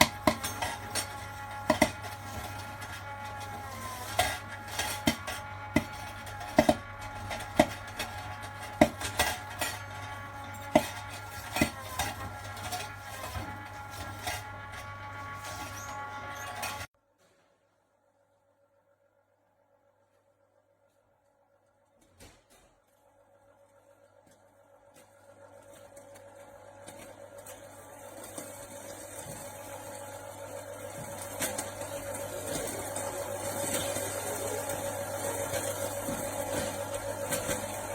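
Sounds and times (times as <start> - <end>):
popcorn kernels popping: 0.0 - 13.6
popcorn machine hum: 0.0 - 16.9, 21.6 - 37.9.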